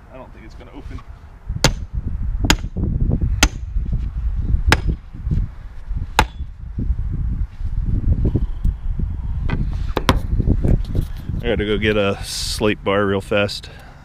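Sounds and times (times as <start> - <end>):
low rumbling noise: 1.0 - 12.9.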